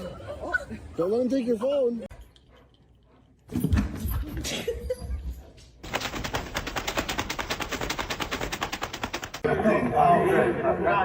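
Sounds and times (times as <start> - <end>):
fast sharp clicks: 5.8 - 9.5.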